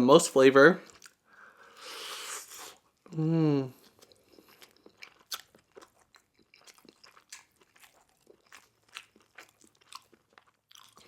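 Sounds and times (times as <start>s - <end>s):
crunching and chewing fried chicken: 3.8s - 11.0s.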